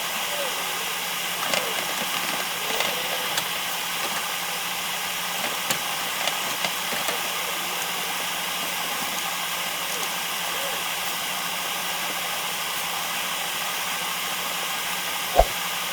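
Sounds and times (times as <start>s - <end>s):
small clicks and spatters: 5.4s - 8.0s.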